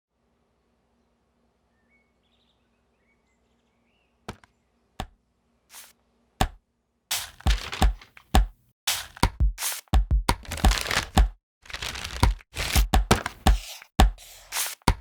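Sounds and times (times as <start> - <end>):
paper swish: 5.7 - 5.9, 7.1 - 15.0
paper crackling and crumpling: 7.1 - 8.3, 10.4 - 13.8
paper snapping: 7.1 - 8.4, 10.4 - 13.9.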